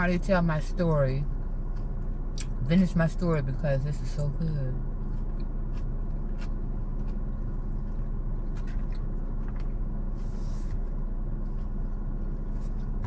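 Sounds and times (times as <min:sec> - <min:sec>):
car engine idling: 0:00.0 - 0:13.0
chewing clicks: 0:05.1 - 0:09.7.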